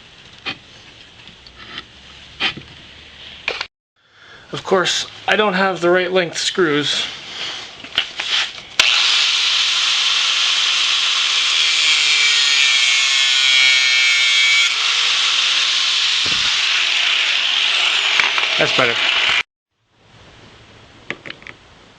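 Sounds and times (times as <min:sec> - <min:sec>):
power tool grinding metal: 0:08.8 - 0:19.4.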